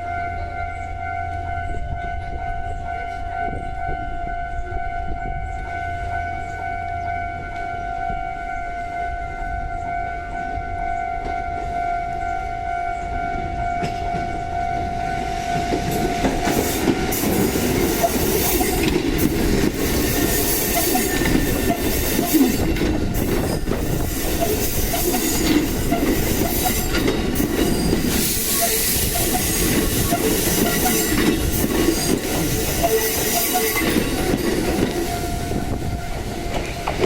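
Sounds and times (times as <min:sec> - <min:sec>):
crossing alarm ringing tone: 0:00.0 - 0:37.0
train wheels rumbling and clicking: 0:10.2 - 0:37.0.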